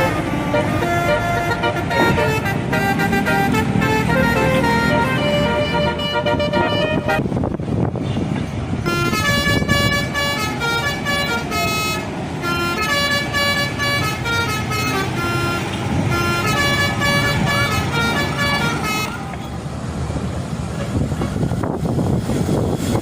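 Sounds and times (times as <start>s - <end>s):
multi-trumpet air horn tune: 0.0s - 7.4s, 8.8s - 19.3s
engine noise: 0.0s - 23.0s
traffic noise: 0.0s - 23.0s.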